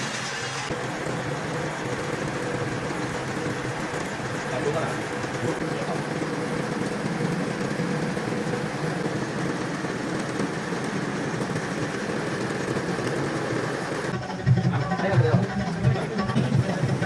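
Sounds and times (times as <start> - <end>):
metal lathe running: 0.0 - 17.0.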